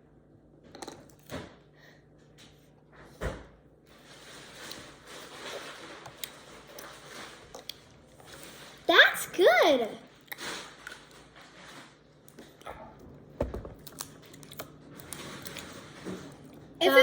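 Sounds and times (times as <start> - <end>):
soft steady rustling: 3.9 - 12.3
plastic bottle knocks and clunks: 13.4 - 13.8.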